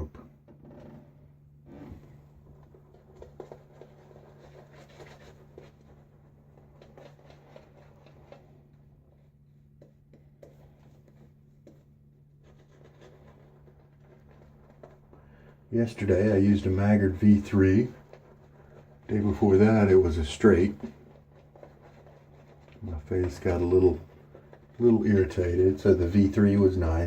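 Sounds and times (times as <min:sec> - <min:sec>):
shaving brush swishing lather: 0:15.8 - 0:27.0.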